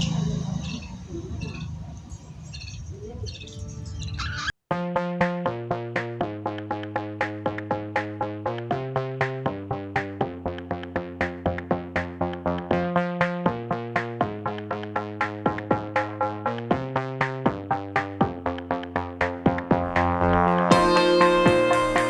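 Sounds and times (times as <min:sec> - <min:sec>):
held synth bass notes: 0:04.7 - 0:22.0
plucked synthesizer figure: 0:04.7 - 0:22.0.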